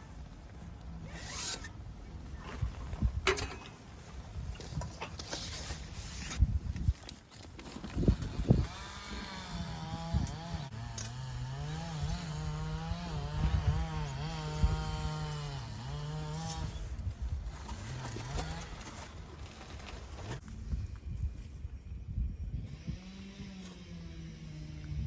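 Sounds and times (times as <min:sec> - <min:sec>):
small engine running fast: 0:08.2 - 0:17.0, 0:22.6 - 0:25.0.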